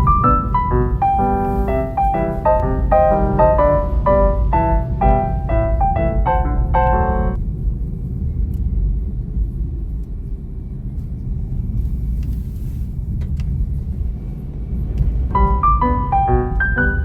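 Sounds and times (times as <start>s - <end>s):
car road and engine rumble: 0.0s - 17.0s.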